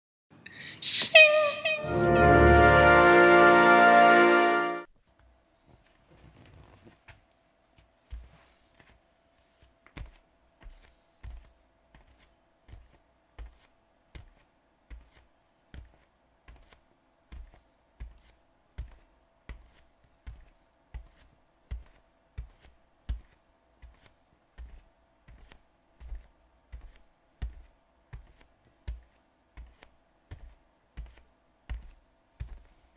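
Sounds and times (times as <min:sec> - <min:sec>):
bare footsteps on wooden floor: 0:15.8 - 0:32.9.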